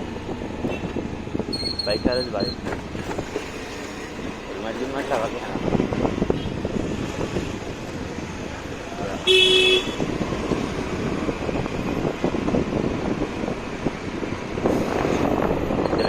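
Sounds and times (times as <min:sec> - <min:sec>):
road traffic noise: 0:00.0 - 0:16.0
vehicle horn honk: 0:09.2 - 0:10.0.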